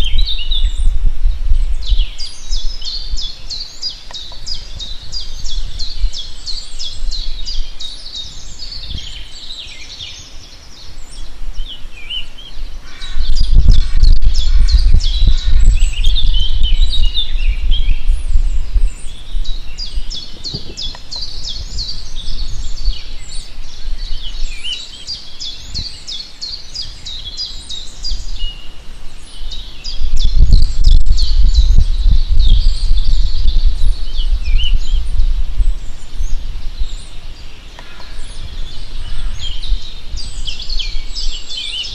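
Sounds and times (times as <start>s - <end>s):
small birds chirping: 0.0s - 41.9s
loud low rumbling: 30.0s - 36.8s.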